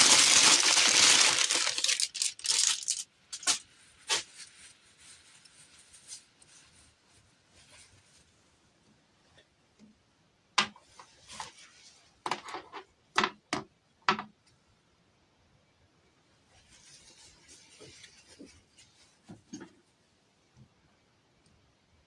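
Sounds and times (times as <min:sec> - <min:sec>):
soft rubbing and rustling: 0:03.6 - 0:09.5, 0:10.8 - 0:12.3, 0:16.4 - 0:20.2.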